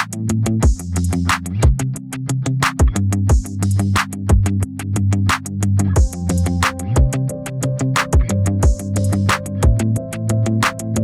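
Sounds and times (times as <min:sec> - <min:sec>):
upbeat electronic music: 0:06.0 - 0:11.0.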